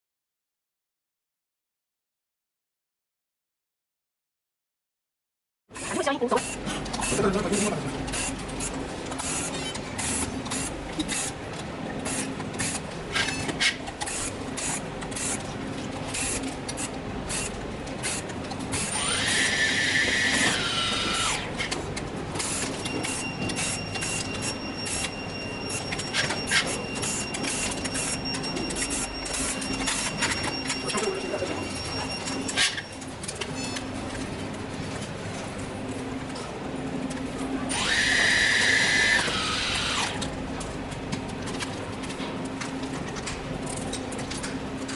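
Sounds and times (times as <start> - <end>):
small motor whirring: 18.8 - 21.5, 37.7 - 40.2.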